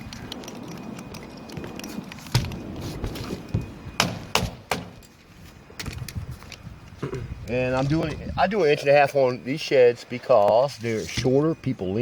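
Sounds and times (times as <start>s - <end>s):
knocks on wooden roof: 4.0s - 5.0s.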